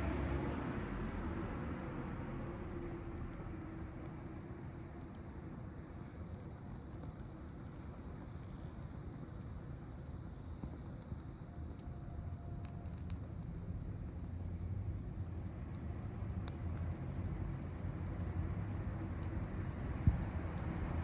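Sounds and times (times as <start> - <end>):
fire crackling: 0.0 - 21.0
low rumble of stove fire: 0.0 - 21.0
high hiss: 2.5 - 16.3, 18.4 - 21.0.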